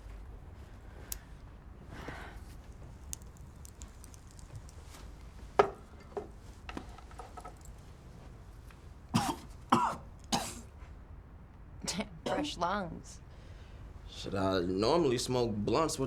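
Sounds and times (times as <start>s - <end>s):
person coughing: 9.2s - 10.7s.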